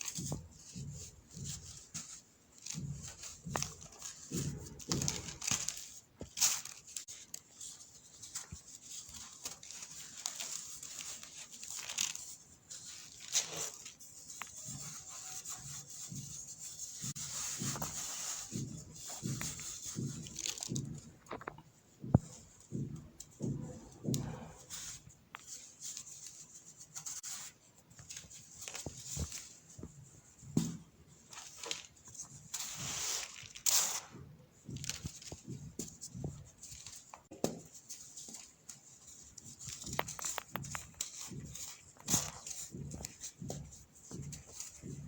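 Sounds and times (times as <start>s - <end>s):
gritty rubbing of powder by hand: 7.0s - 21.2s, 31.3s - 34.2s.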